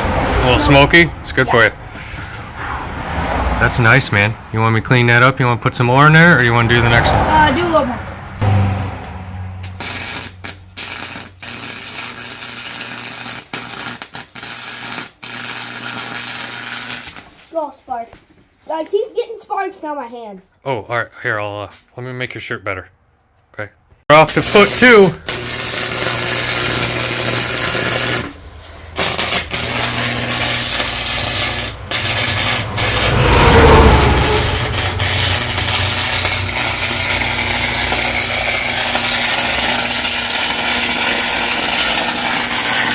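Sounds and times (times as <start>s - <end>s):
arc welder crackling: 9.6s - 17.2s, 24.3s - 33.7s, 34.4s - 42.9s.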